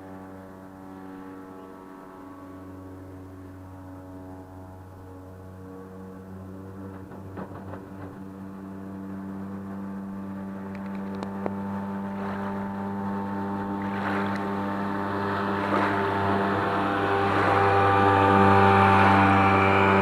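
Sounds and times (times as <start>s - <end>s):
outboard motor drone: 0.0s - 20.0s
water splashing: 10.8s - 20.0s.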